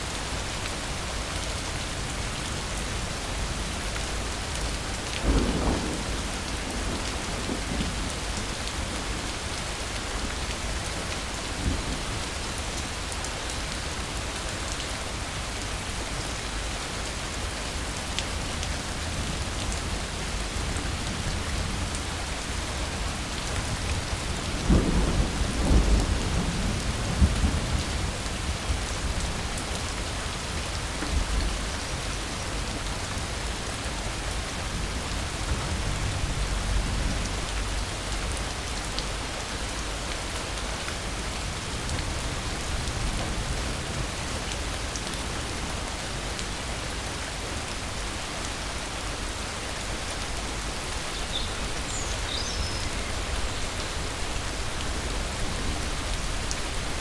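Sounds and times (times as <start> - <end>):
steady rain: 0.0 - 57.0
low thunder rumble: 5.2 - 8.9.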